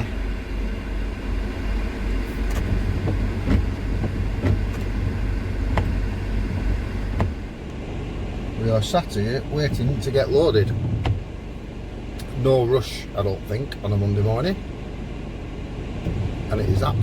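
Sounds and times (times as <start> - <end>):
low rumble in van cab: 0.0 - 17.0
rain tapping on roof: 2.6 - 6.0.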